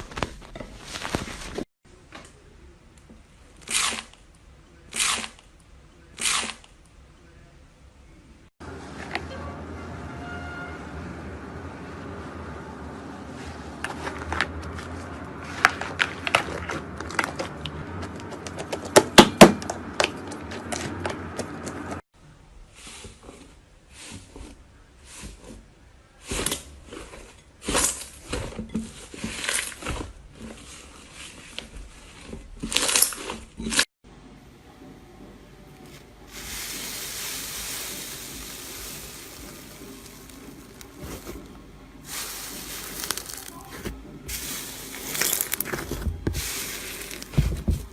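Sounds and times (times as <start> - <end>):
steady hissing noise: 35.9 - 43.6.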